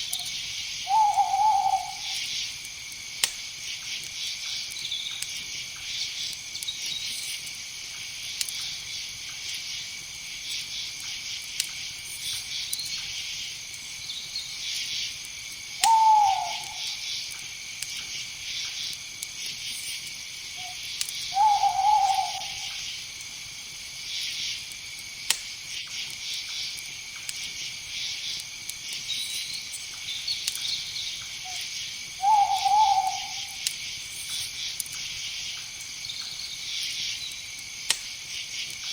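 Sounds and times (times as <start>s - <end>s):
night insects chirring: 0.0s - 38.9s
owl hooting: 0.9s - 2.2s, 15.8s - 17.0s, 20.6s - 22.8s, 32.2s - 33.6s.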